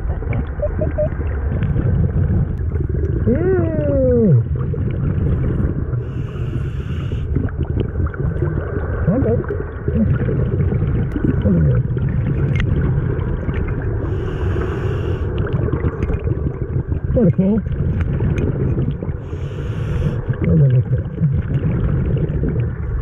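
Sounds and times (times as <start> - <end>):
muffled gliding voice sounds: 0.0 - 1.2, 3.2 - 4.6, 9.0 - 10.4, 11.2 - 12.0, 17.1 - 17.7, 20.3 - 21.6
underwater rumble: 0.0 - 23.0
regulator breath hiss: 6.1 - 7.3, 14.1 - 15.3, 19.3 - 20.2.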